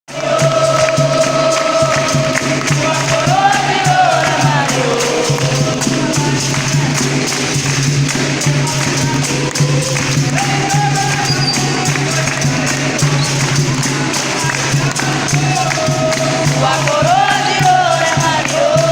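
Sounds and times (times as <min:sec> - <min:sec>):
person singing: 0:00.1 - 0:07.0, 0:08.4 - 0:18.9
low pulsing percussion drone: 0:00.2 - 0:18.9
tambourine jingles: 0:00.2 - 0:18.9.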